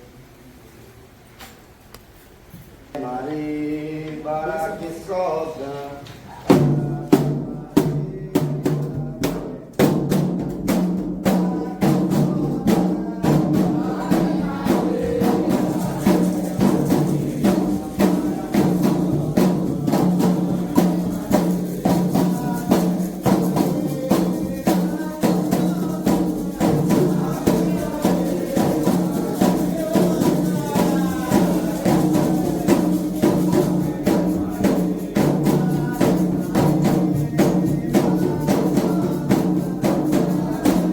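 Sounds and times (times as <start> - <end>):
hand drums rhythm: 6.5 - 40.9
person singing: 11.2 - 40.9.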